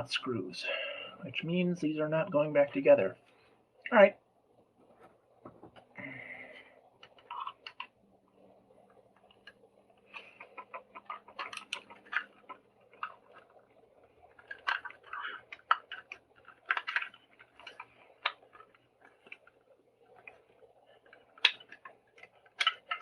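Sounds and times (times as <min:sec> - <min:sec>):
plastic cracking and clicking: 0:07.0 - 0:08.0, 0:09.2 - 0:23.0.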